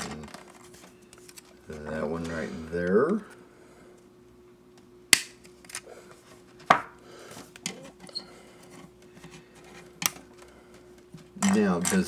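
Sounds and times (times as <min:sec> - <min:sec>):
plastic parts ticking and rustling: 0:00.0 - 0:02.4, 0:07.6 - 0:12.0
faint steady hum: 0:00.0 - 0:12.0
plastic parts snapping clicks: 0:05.2 - 0:05.8, 0:10.0 - 0:10.2.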